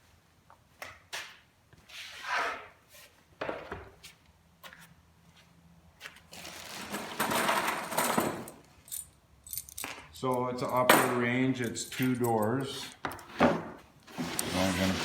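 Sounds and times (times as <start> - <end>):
rustling and scraping: 11.9 - 15.0.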